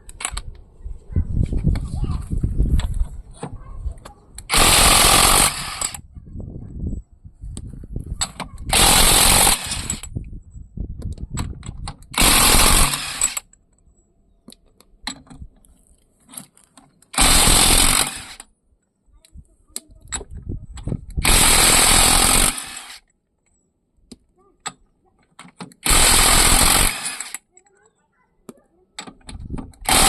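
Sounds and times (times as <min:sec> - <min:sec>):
impact wrench hammering: 0:04.5 - 0:06.0, 0:12.2 - 0:13.4, 0:17.2 - 0:18.4, 0:21.2 - 0:23.0, 0:25.8 - 0:27.4, 0:29.8 - 0:30.0
clicks and clatter of handling: 0:13.5 - 0:17.2.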